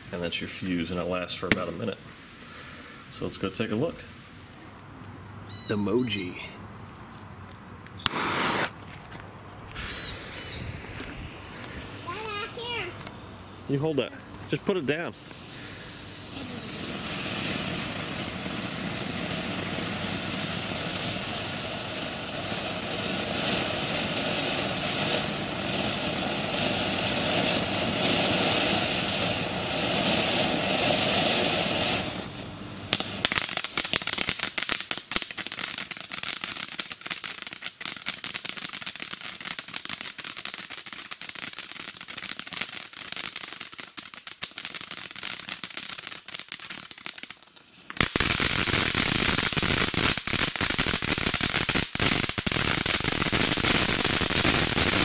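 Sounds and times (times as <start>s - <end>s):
firework fountain hissing: 0.0s - 4.6s, 8.0s - 8.8s, 9.7s - 55.0s
rapid firework crackling: 8.0s - 8.8s, 9.7s - 13.0s, 15.2s - 55.0s.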